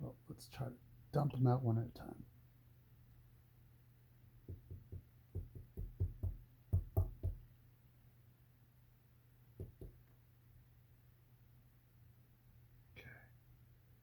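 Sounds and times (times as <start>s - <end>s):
lock cylinder knocking on hard surface: 4.5s - 7.4s, 9.6s - 10.0s.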